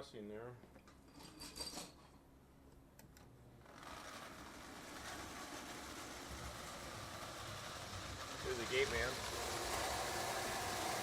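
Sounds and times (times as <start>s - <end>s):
toy train running on track: 3.7s - 11.0s.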